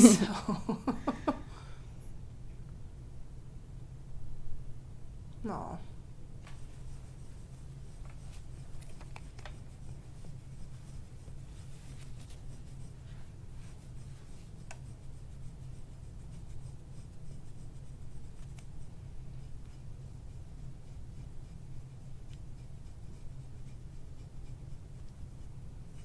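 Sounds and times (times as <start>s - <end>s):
hands rubbing back muscles: 6.5s - 26.0s.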